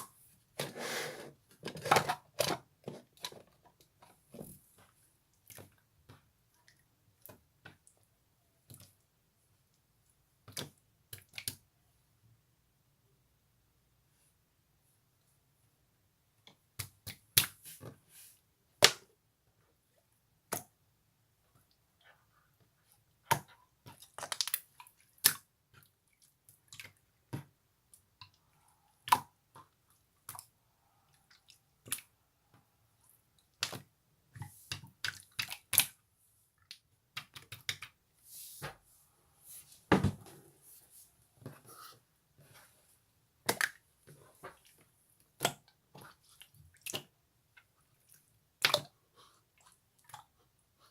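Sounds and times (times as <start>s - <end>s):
slime squishing with sticky pops: 23.2s - 28.4s, 33.4s - 36.0s.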